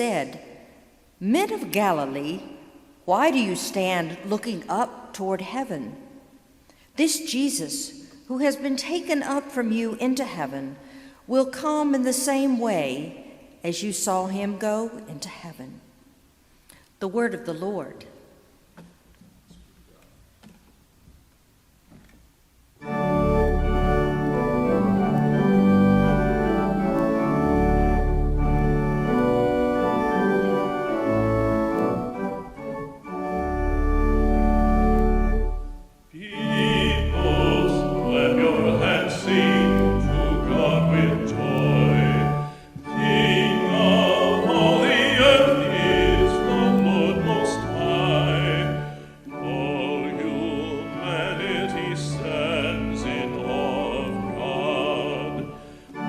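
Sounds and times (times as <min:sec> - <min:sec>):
church organ chords: 0:22.8 - 0:56.0
singing with vibrato: 0:36.1 - 0:55.8.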